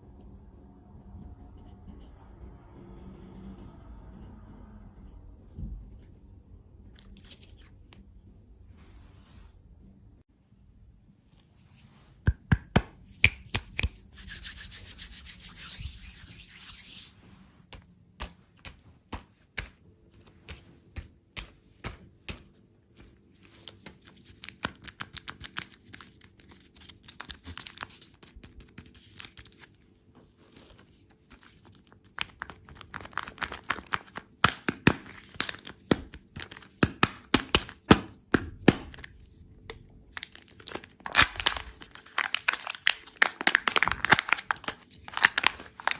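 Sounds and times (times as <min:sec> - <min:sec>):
candy clicking and tapping: 0:12.3 - 0:14.0, 0:17.7 - 0:29.4, 0:31.7 - 0:45.9.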